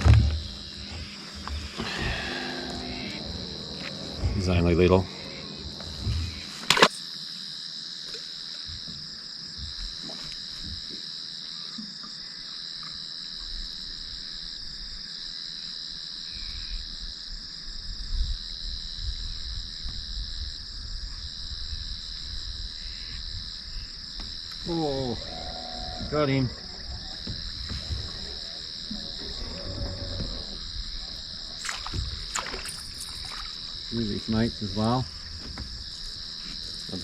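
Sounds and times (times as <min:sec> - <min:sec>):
low rumbling: 0:00.0 - 0:06.7, 0:24.4 - 0:37.0
insects trilling: 0:00.0 - 0:37.0.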